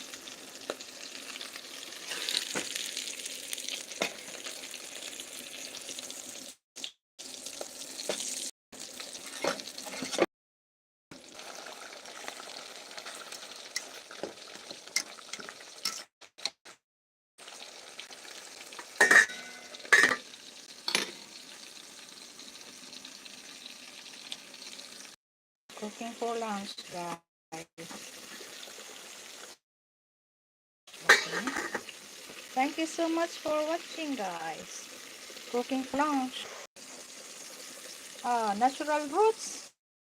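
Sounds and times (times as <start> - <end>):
food sizzling in a pan: 0.0 - 10.3, 11.2 - 16.1, 17.4 - 29.6, 30.9 - 39.8
utensil clinking against pan: 19.0 - 20.2.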